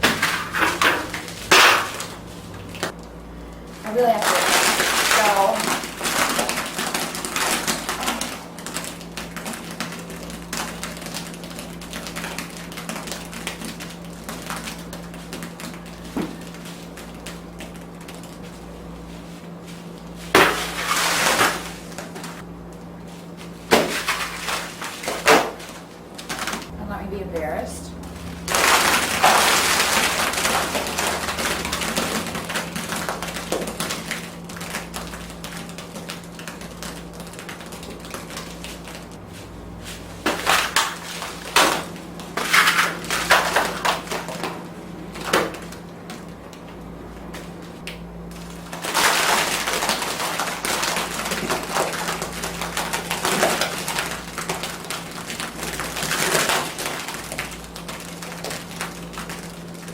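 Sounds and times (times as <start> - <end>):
steady low hum: 0.0 - 59.9
wet splattering and squelching: 28.4 - 39.2.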